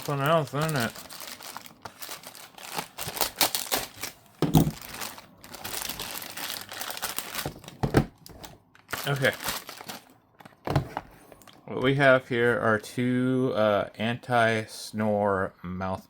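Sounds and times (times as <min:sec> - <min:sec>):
packaging crinkling and tearing: 0:00.0 - 0:10.6.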